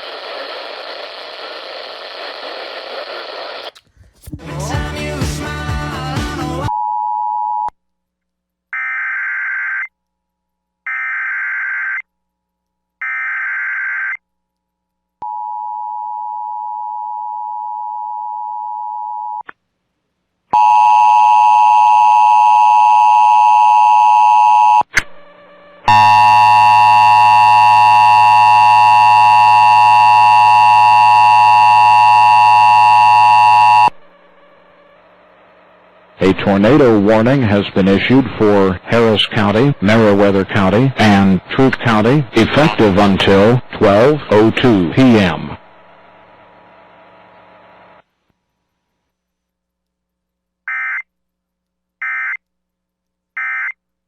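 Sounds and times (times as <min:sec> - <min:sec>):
harsh two-tone attention signal: 0:25.9 - 0:34.0
steady single tone: 0:25.9 - 0:34.8.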